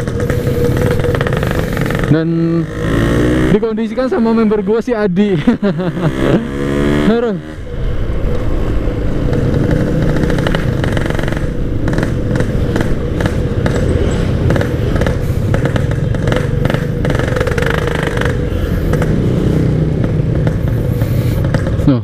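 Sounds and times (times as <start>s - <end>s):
two-stroke motorcycle engine running: 0.0s - 4.8s, 9.2s - 22.0s
rushing wind: 0.0s - 22.0s.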